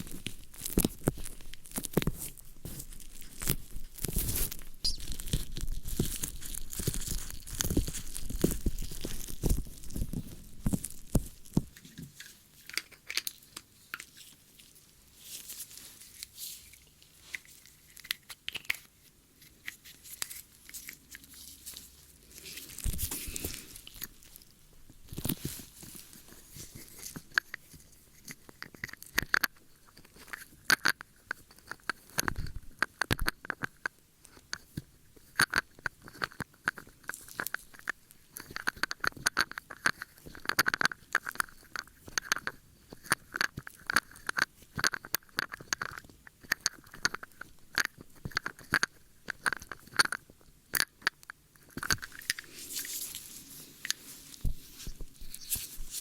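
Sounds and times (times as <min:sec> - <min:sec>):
crackly scratching in ear: 0:00.0 - 0:12.8, 0:51.8 - 0:56.0.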